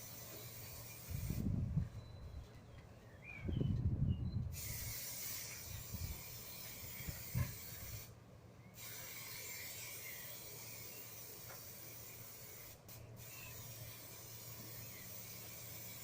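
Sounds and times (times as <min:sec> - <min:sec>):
aerosol spray can hissing: 0:00.0 - 0:01.4, 0:04.5 - 0:08.1, 0:08.8 - 0:16.0.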